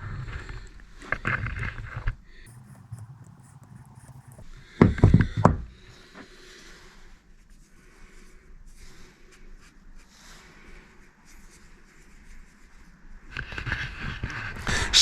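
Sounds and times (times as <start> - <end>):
faint handling noise: 2.5 - 4.4.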